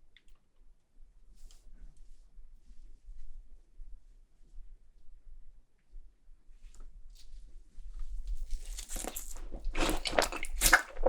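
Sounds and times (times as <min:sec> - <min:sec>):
person chewing wet mouth clicks: 0:09.8 - 0:11.0.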